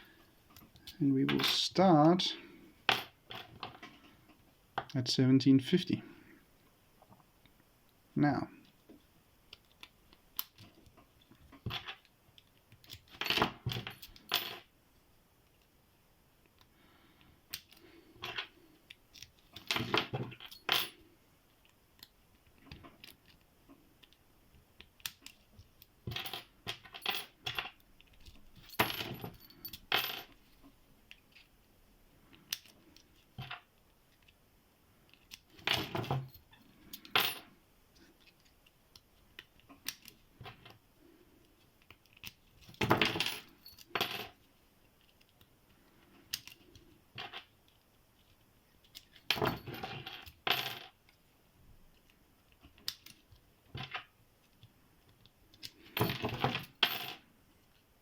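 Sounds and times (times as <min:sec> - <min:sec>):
metal padlocks clicking and clinking: 0:26.1 - 0:30.4, 0:42.0 - 0:44.4.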